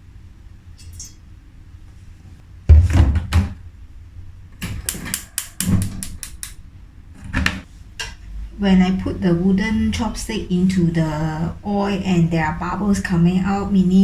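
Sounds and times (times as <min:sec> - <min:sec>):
wok knocking down: 0:02.7 - 0:03.6
kitchen handling clicks: 0:04.6 - 0:06.6.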